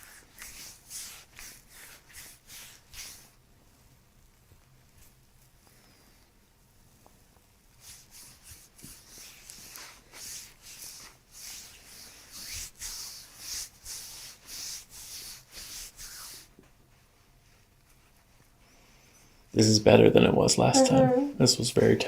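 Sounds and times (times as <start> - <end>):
hands rubbing skin: 0.0 - 3.4, 7.8 - 18.7.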